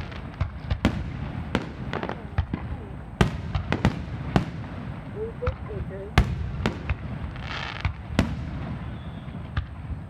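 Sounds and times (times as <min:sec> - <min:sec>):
rumble of distant explosions: 0:00.0 - 0:10.0
firecracker bangs: 0:05.6 - 0:10.0.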